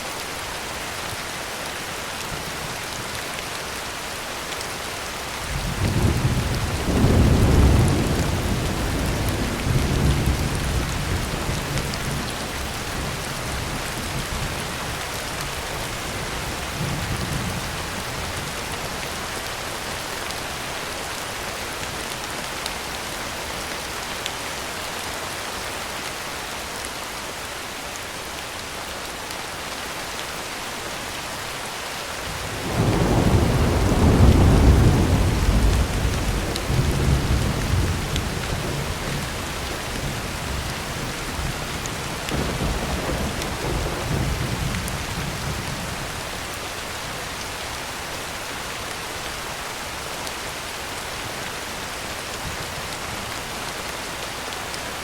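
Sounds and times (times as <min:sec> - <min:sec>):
heavy rain on a tin roof: 0:00.0 - 0:55.0
rolling thunder: 0:32.5 - 0:40.7.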